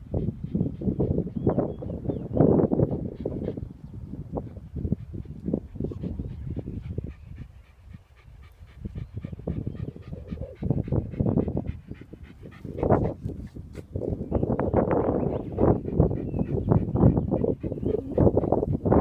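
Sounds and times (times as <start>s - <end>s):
wind buffeting microphone: 0.0s - 19.0s
dog panting: 4.4s - 14.2s, 15.3s - 19.0s.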